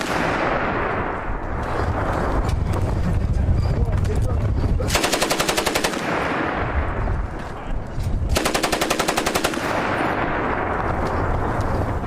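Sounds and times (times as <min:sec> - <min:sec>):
automatic rifle fire with echo: 0:00.0 - 0:01.2, 0:04.9 - 0:06.8, 0:08.3 - 0:10.6.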